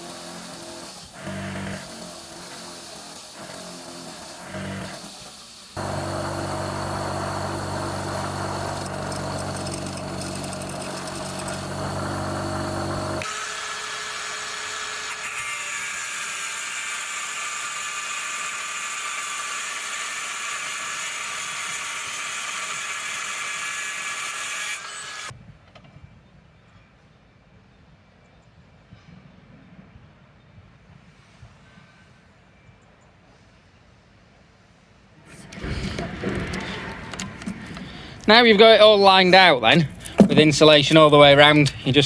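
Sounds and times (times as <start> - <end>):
high-pitched power tool: 0.0 - 25.3
power tool motor humming: 0.0 - 25.3.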